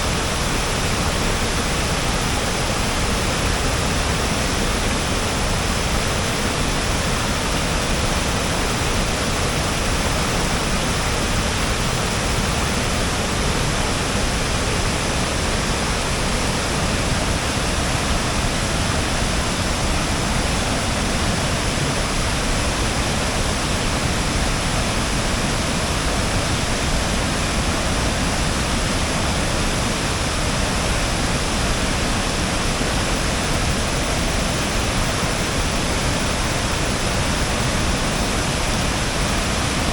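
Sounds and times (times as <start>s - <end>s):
waterfall rushing: 24.4s - 39.9s.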